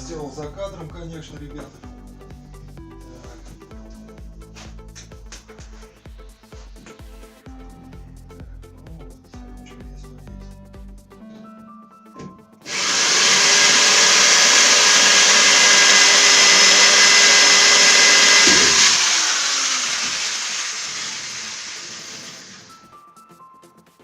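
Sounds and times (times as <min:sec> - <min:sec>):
electric power tool motor: 0:12.7 - 0:22.8.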